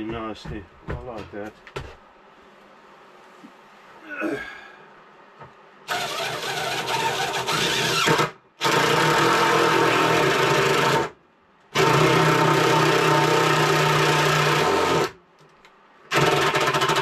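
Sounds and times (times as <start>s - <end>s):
cordless drill driving screws: 5.9s - 11.1s, 11.8s - 15.1s.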